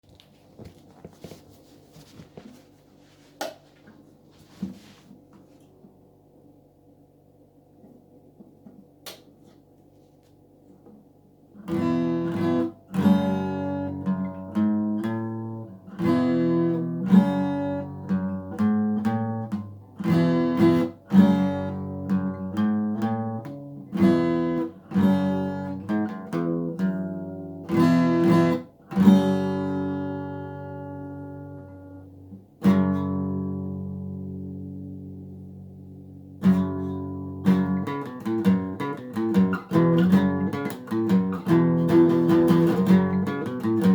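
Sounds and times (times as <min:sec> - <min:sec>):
acoustic guitar strumming chords: 0:11.5 - 0:43.9.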